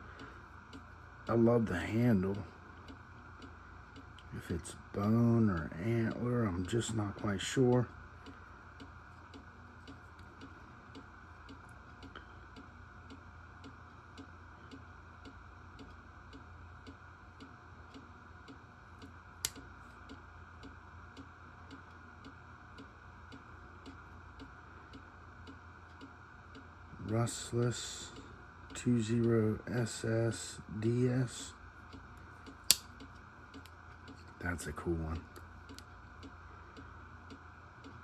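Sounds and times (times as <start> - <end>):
sharp click: 19.4 - 19.6, 32.7 - 33.0.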